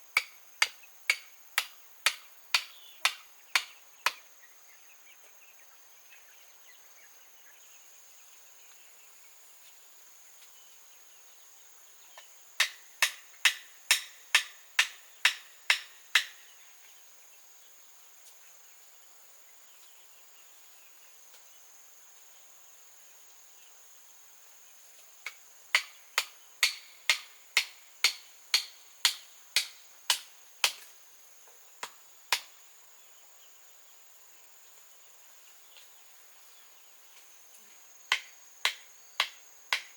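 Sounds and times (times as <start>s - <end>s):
high insect drone: 0.0s - 39.9s
hand tool strikes: 0.2s - 4.2s, 12.6s - 16.4s, 25.7s - 30.9s, 38.1s - 39.9s.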